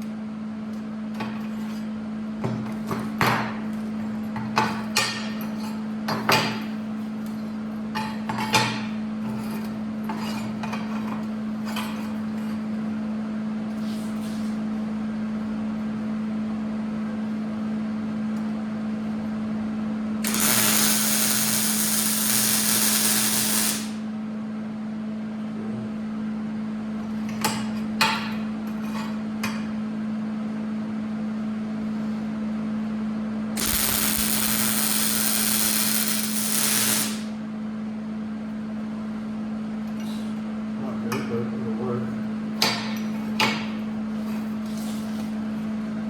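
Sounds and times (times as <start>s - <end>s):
steady low hum: 0.0s - 46.0s
welding crackling hiss: 20.2s - 24.1s, 33.6s - 37.4s.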